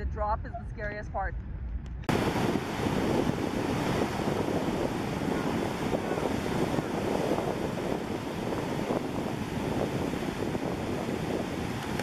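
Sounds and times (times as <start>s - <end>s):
wind rushing over microphone: 0.0s - 12.0s.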